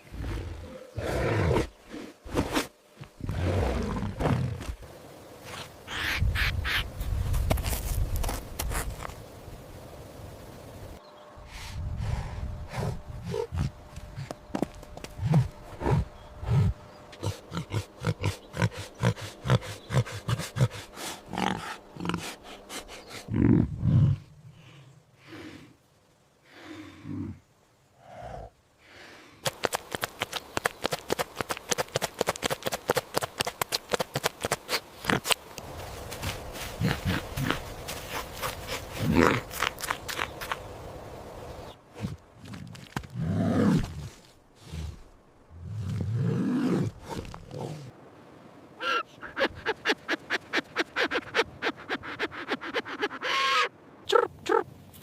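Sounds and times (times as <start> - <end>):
farm animal calls: 48.8 - 54.7.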